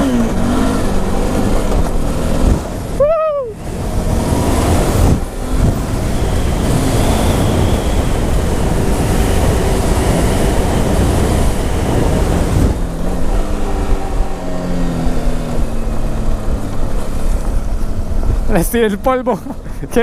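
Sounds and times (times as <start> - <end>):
off-road vehicle engine: 0.0 - 20.0
rumbling wind noise: 0.0 - 20.0.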